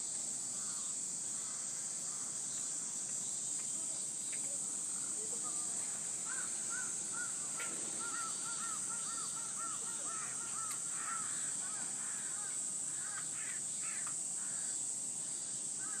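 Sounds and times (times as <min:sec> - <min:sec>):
high-pitched insect drone: 0:00.0 - 0:16.0
bird calling: 0:05.1 - 0:14.8.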